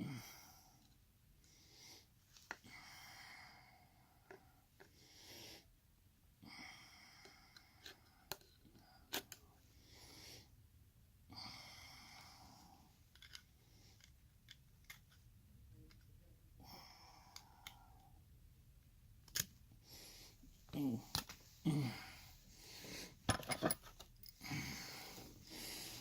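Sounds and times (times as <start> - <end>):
faint breathing: 0.0 - 5.7, 6.4 - 10.6, 11.3 - 14.2, 16.5 - 18.3, 19.8 - 23.3, 24.2 - 26.0.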